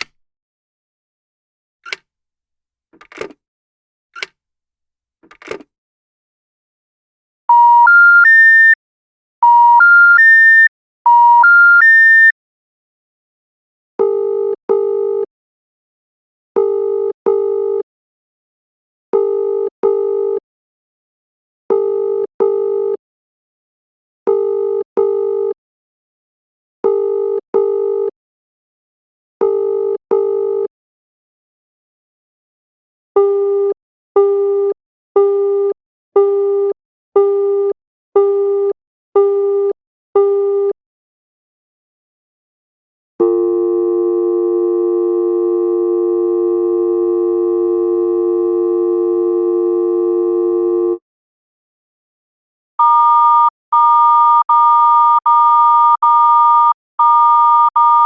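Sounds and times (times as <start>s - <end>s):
telephone dial tone: 1.8s - 2.0s, 3.0s - 3.4s, 5.3s - 5.6s, 43.2s - 51.0s, 52.8s - 58.0s
busy signal beeps: 43.2s - 51.0s, 52.8s - 58.0s.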